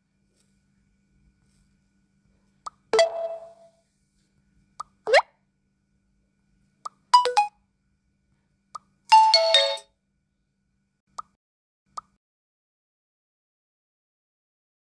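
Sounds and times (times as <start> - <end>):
falling notification chime: 3.0 - 3.7, 7.2 - 7.5
short electronic notification notes: 3.0 - 3.7.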